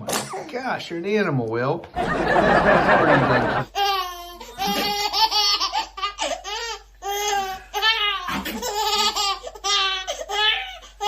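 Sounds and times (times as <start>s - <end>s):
baby laughing: 3.4s - 11.0s.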